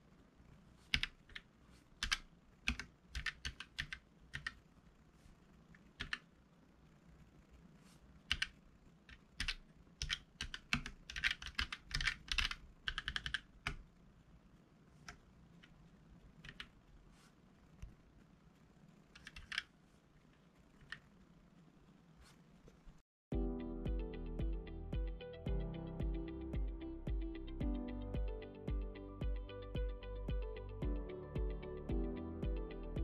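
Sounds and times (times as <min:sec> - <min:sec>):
mechanical keyboard typing: 0:00.9 - 0:04.6, 0:06.0 - 0:06.3, 0:08.3 - 0:13.8, 0:16.4 - 0:16.7, 0:19.2 - 0:19.7.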